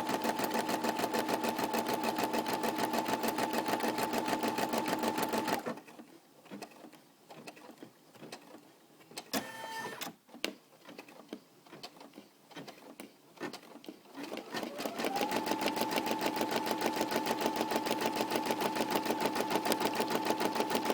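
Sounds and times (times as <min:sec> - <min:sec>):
embroidery machine stitching: 0:00.0 - 0:05.8, 0:13.4 - 0:20.9.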